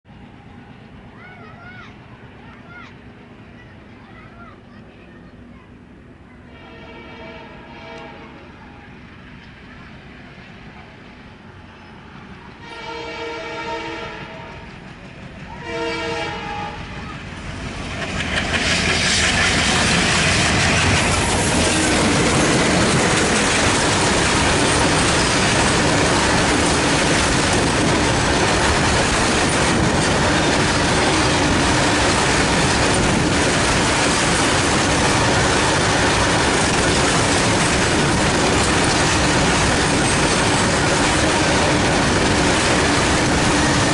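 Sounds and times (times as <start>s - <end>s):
locomotive horn blasts: 6.5s - 8.4s, 12.6s - 14.7s, 15.6s - 17.0s
freight wagons clattering on rails: 17.9s - 43.9s.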